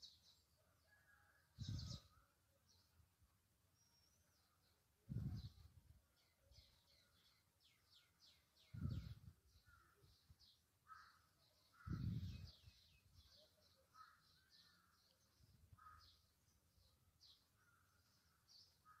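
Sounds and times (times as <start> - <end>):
birds chirping: 0.0 - 3.0, 3.7 - 19.0
lower bird calls: 8.4 - 16.4.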